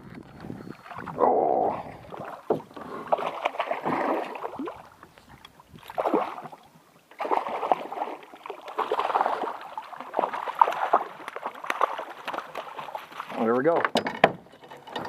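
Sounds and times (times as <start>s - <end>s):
water splashing from thrashing fish: 0.8s - 5.0s, 5.7s - 13.5s.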